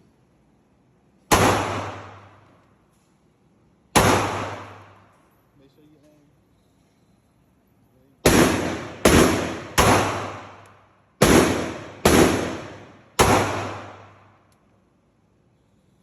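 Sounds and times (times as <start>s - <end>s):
pistol shots echoing: 1.3s - 2.6s, 3.9s - 5.2s, 8.2s - 14.4s.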